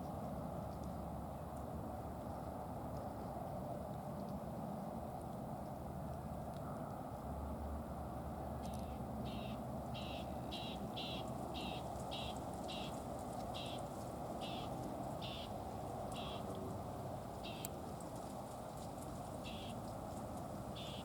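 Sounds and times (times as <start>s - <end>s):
crow calling: 9.2s - 16.6s, 17.4s - 17.8s, 19.4s - 19.9s, 20.7s - 21.0s.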